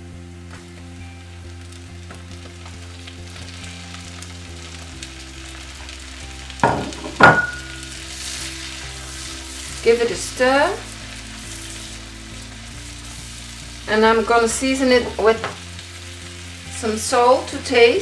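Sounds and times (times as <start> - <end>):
shrimp sizzling in a wok: 0.0 - 18.0
utensil knocking against pan: 6.6 - 7.7.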